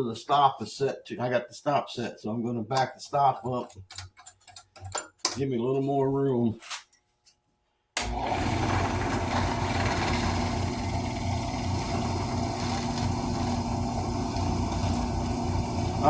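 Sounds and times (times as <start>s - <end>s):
drill press boring into wood: 8.0s - 16.0s.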